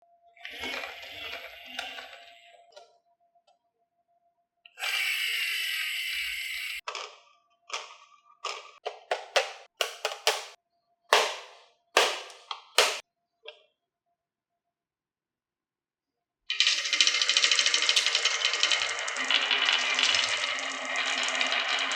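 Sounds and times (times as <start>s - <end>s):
marbles clacking on track pieces: 16.5s - 20.8s
marbles rolling and clacking on track: 16.5s - 21.9s.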